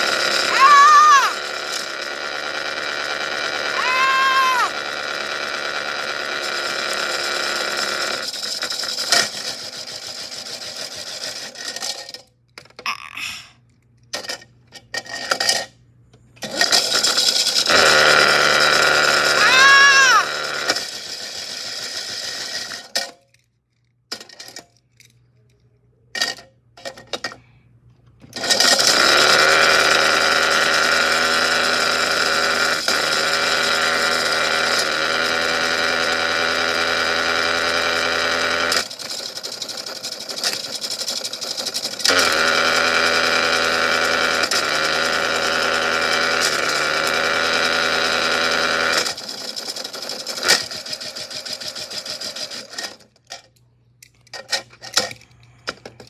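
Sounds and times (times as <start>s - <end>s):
small electric motor whining: 0.0s - 11.0s, 16.5s - 22.3s, 28.4s - 52.9s.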